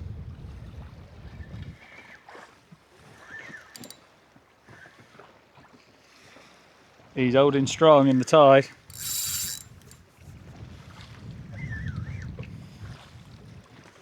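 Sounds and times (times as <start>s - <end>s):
wind buffeting microphone: 0.0s - 1.8s, 9.3s - 13.9s.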